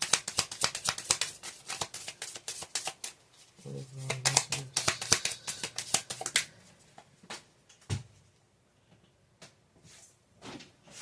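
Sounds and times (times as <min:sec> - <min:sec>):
cards snapping and tapping: 0:00.0 - 0:03.1, 0:04.0 - 0:06.5
cards being shuffled: 0:00.0 - 0:03.2, 0:03.8 - 0:06.5.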